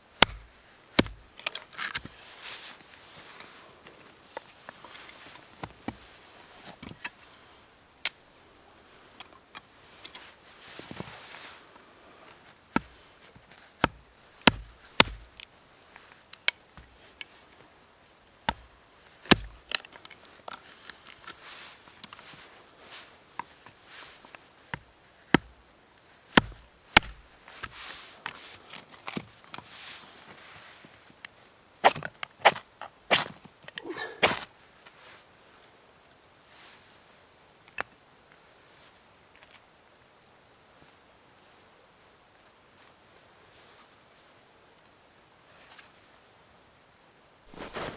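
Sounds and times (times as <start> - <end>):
blade chopping knocks: 0.2 - 1.3, 13.8 - 15.3, 19.3 - 19.6, 26.4 - 27.2.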